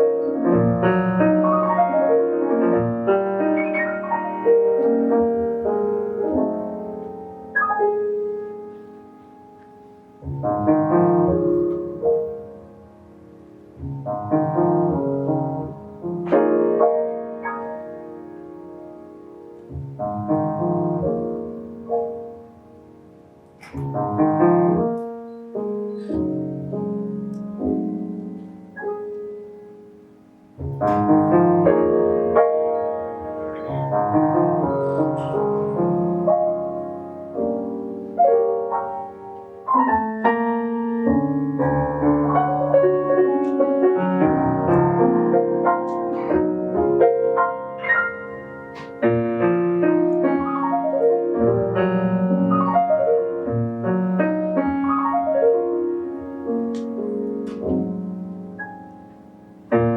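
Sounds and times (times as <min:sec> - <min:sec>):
jazz piano playing: 0:00.0 - 0:59.9.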